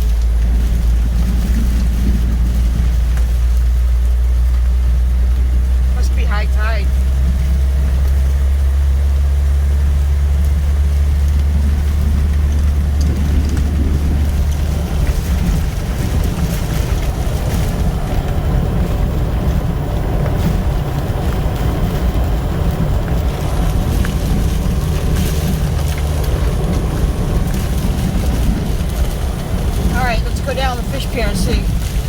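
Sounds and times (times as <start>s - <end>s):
storm wind buffeting vehicle: 0.0s - 32.0s
vehicle engine rumble: 0.0s - 32.0s
light ticks: 11.2s - 18.5s.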